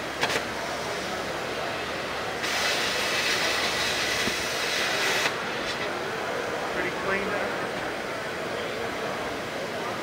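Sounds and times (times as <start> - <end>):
busy hall background noise: 0.0 - 10.0
plasma cutter hissing: 2.4 - 5.4.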